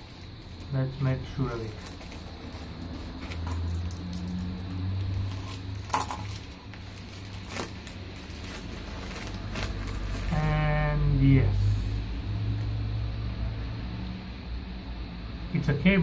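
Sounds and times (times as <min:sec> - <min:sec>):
package wrapping crinkling: 0:00.0 - 0:10.4
sharp paper crackle: 0:00.0 - 0:10.5.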